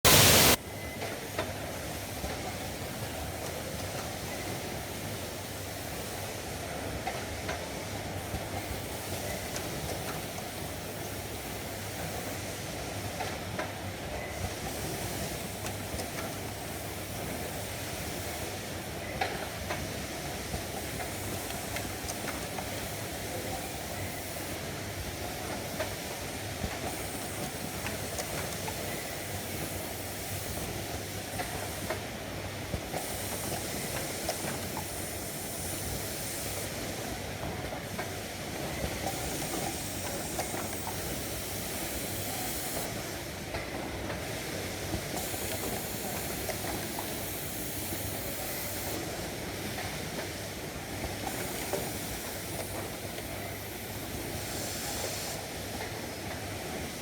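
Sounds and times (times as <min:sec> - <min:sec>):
wire-cutting machine hissing: 0:00.0 - 0:00.6, 0:38.6 - 0:43.2, 0:45.1 - 0:49.1, 0:51.2 - 0:55.5.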